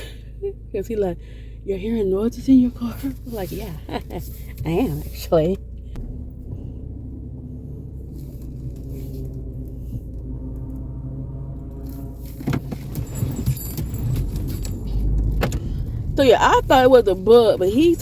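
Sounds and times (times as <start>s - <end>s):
car engine hum from inside: 0.0s - 18.0s
light jingling rattle: 12.7s - 15.8s.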